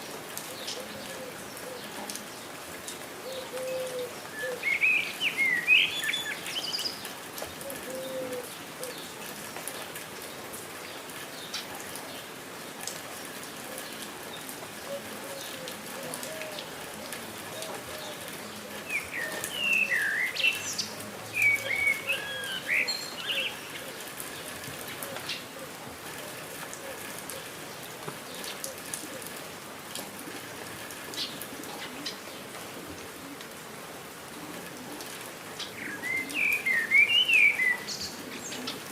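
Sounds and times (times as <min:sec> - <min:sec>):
patter of water: 0:00.0 - 0:33.7
birds singing: 0:03.2 - 0:07.1, 0:17.6 - 0:25.6, 0:35.6 - 0:38.9.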